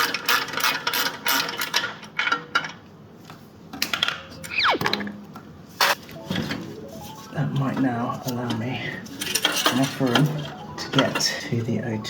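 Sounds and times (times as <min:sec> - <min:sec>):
short squeak falling in pitch: 0:04.4 - 0:05.1
metal tools clinking: 0:09.2 - 0:11.3.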